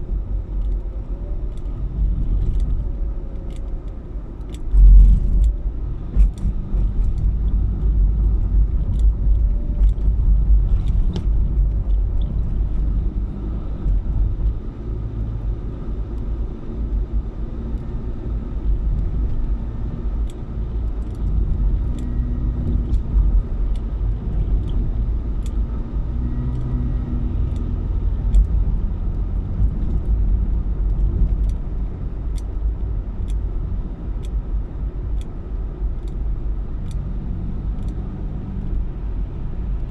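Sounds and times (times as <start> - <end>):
car engine and road rumble: 0.0 - 39.9
small clicks: 1.5 - 7.3, 26.3 - 30.2, 34.1 - 36.2, 37.7 - 38.8.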